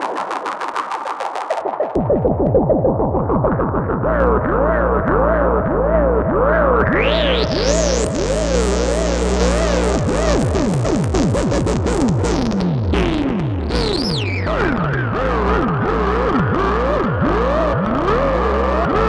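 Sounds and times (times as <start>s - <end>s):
noisy synth wash: 0.0s - 19.0s
synthesizer drone with pitch swoops: 0.0s - 19.0s.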